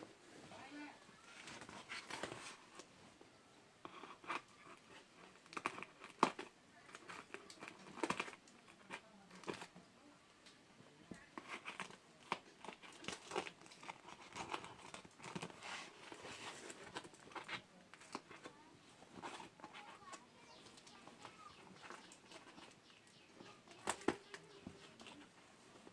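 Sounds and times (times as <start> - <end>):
packaging crinkling and tearing: 4.1 - 9.7, 11.4 - 18.5.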